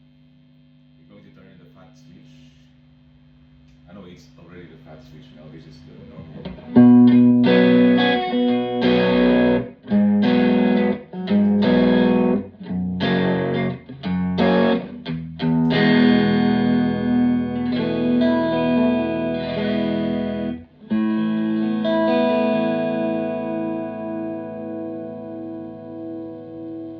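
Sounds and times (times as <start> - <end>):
electric guitar chords: 6.0 - 26.9.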